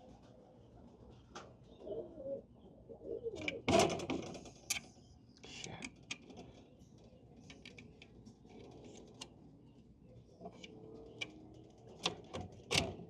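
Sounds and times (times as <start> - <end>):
faint pigeon cooing: 0.0 - 13.0
wire cages clicking and tapping: 5.5 - 9.4, 10.4 - 13.0.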